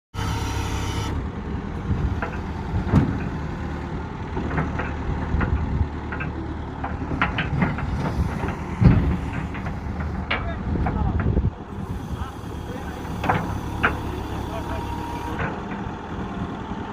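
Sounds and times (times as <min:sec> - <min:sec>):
diesel engine running: 0:00.1 - 0:16.9
knocks and clanks: 0:02.2 - 0:03.4, 0:04.4 - 0:11.5, 0:12.9 - 0:14.5.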